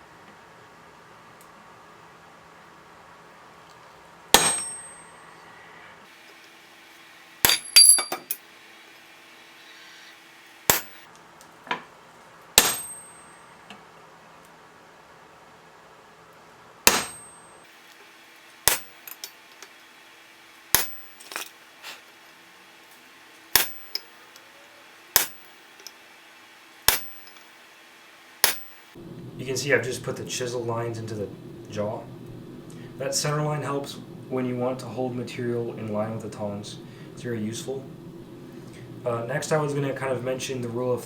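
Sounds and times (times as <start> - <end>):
faint steady hum: 0.0 - 41.0
hammer striking metal chisel: 4.3 - 5.3, 7.4 - 8.4, 10.7 - 11.1, 12.6 - 13.4, 16.9 - 17.4, 18.7 - 19.3, 20.7 - 21.5, 23.6 - 24.2, 25.2 - 25.9, 26.9 - 27.5, 28.4 - 28.9.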